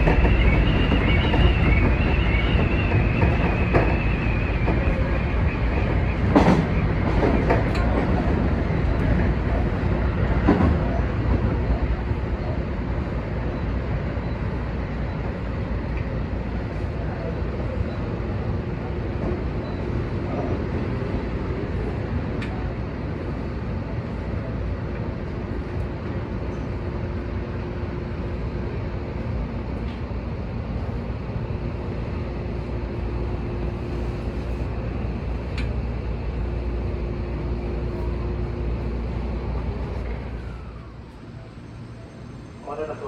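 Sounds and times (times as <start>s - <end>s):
electric train rumble and hum: 0.0s - 43.0s.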